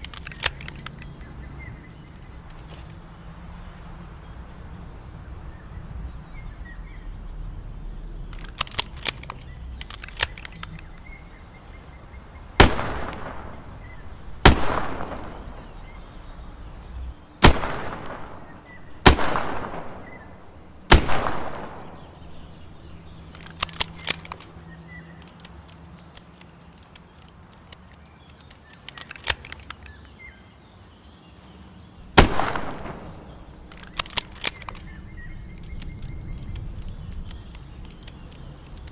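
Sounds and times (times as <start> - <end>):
light clicks: 0.0 - 3.2, 8.2 - 30.3, 32.2 - 38.9
revolver shots echoing: 12.6 - 22.9, 32.2 - 33.7.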